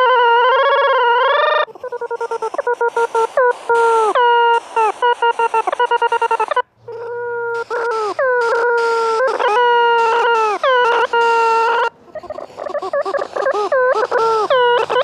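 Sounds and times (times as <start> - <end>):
bursts of hiss: 2.2 - 6.6.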